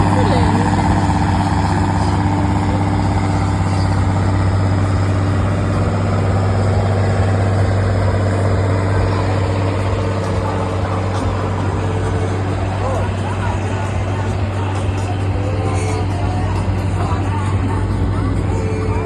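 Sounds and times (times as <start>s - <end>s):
tractor diesel engine running: 0.0s - 19.0s.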